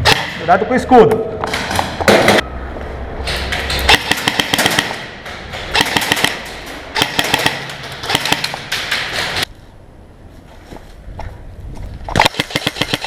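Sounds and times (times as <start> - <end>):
airsoft rifle full-auto bursts: 12.2 - 13.0.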